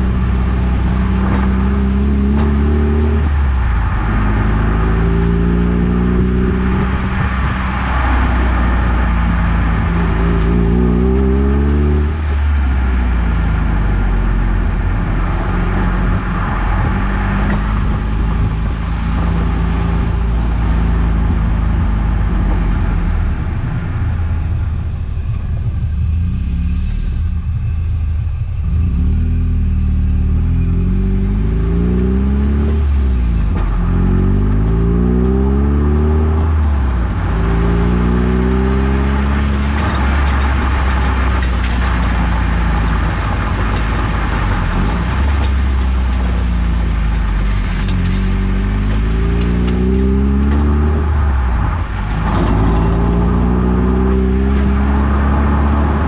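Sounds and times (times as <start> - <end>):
car engine accelerating: 0.0 - 56.0
road noise: 0.0 - 56.0
metallic rattle: 36.5 - 50.2.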